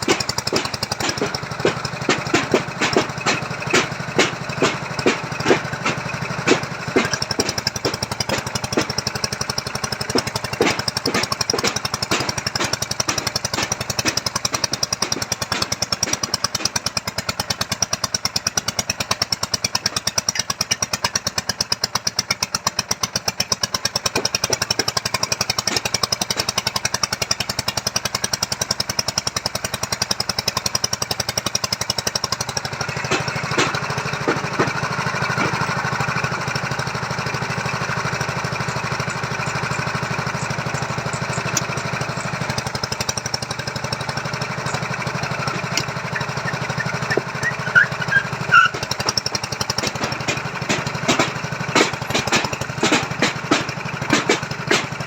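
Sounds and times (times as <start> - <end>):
sharp knocks: 0.0 - 9.1, 10.0 - 16.8, 24.0 - 26.9, 32.8 - 37.6, 44.6 - 55.0
auger engine running: 0.0 - 55.0.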